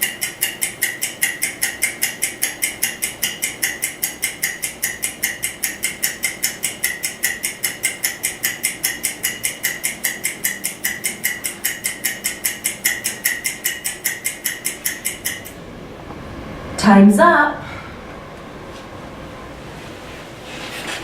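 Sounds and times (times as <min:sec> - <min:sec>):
rapid clock ticking: 0:00.0 - 0:15.6.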